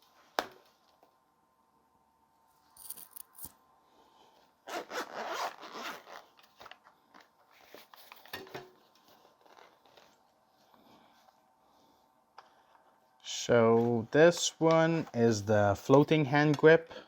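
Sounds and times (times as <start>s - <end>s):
handling rustles: 2.7s - 3.5s
zipper pulled open: 4.7s - 6.5s.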